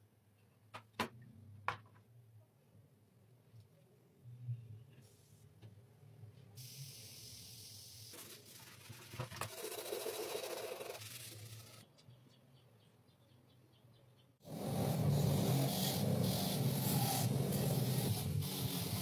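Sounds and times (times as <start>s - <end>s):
spray hissing: 6.6s - 8.2s, 14.5s - 19.0s.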